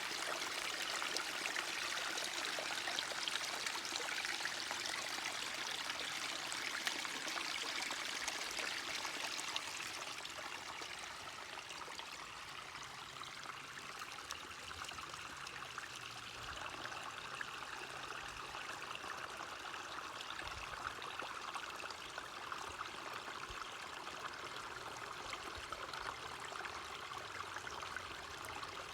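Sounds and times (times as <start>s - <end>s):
stream water rushing: 0.0s - 11.8s.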